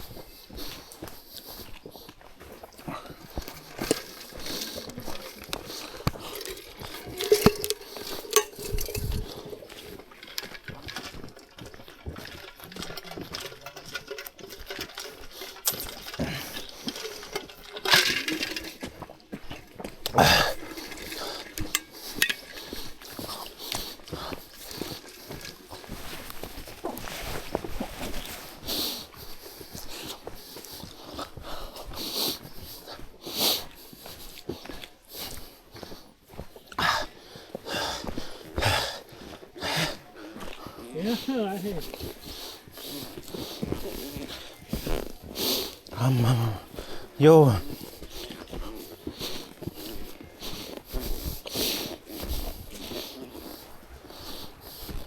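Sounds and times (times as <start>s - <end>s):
small clinks and knocks: 3.2s - 26.7s.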